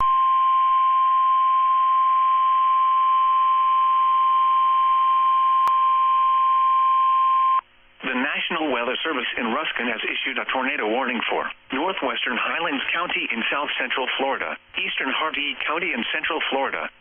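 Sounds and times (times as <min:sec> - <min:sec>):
steady high alarm tone: 0:00.2 - 0:07.6
radio hiss: 0:08.0 - 0:17.0.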